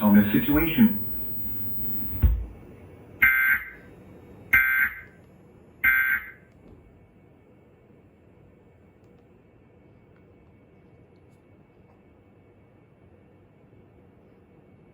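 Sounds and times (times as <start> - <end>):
warbling digital data bursts: 0.0 - 2.4
low thump: 2.0 - 2.7.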